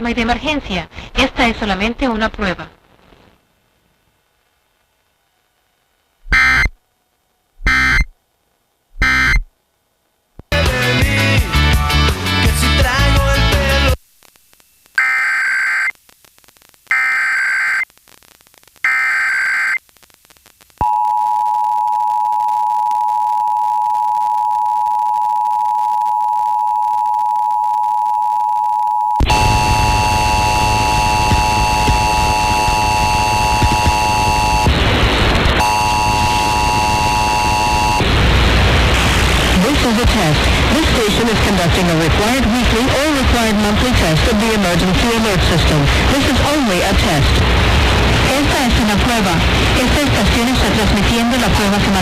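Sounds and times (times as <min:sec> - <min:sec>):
noise burst: 0:00.0 - 0:15.3, 0:29.2 - 0:52.0
static hiss: 0:00.0 - 0:20.8, 0:29.2 - 0:52.0
digital data header bursts: 0:06.3 - 0:06.8, 0:07.6 - 0:08.1, 0:09.0 - 0:09.5, 0:29.3 - 0:40.2
two-tone attention signal: 0:06.3 - 0:06.8, 0:07.6 - 0:08.1, 0:09.0 - 0:09.5
music: 0:10.4 - 0:14.0.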